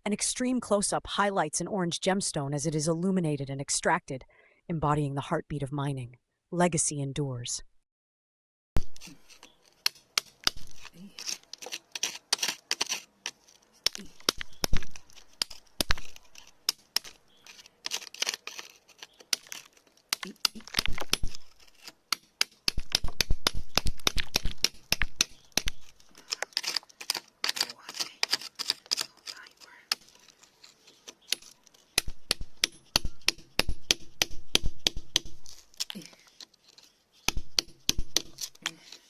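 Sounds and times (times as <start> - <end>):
hand tools scraping soil and rock: 8.8 - 39.0.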